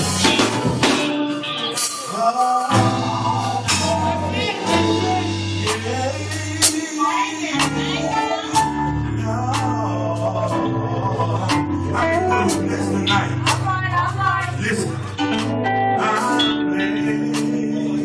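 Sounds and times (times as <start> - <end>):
steady drum hits: 0.0 - 1.3
held bass notes: 0.0 - 1.9, 2.6 - 18.0
gospel singing: 0.0 - 18.0.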